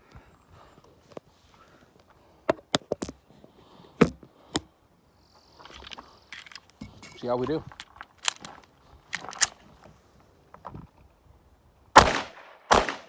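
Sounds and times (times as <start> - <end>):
pistol shots: 12.0 - 13.0.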